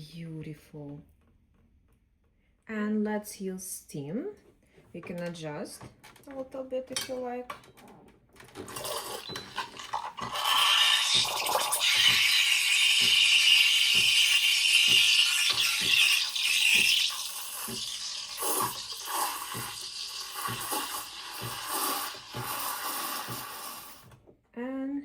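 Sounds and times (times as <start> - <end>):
steam wand hissing: 8.8 - 24.0.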